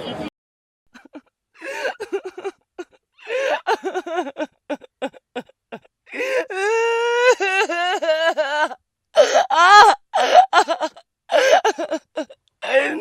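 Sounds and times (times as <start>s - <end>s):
person making pitched vocal bursts: 12.6s - 13.0s.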